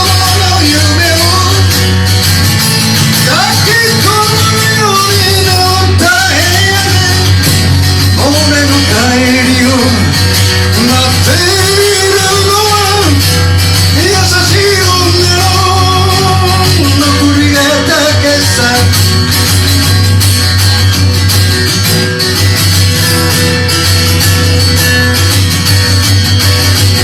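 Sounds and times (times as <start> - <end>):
person singing: 0.0 - 1.9, 3.2 - 19.3
steady bass: 0.0 - 27.0.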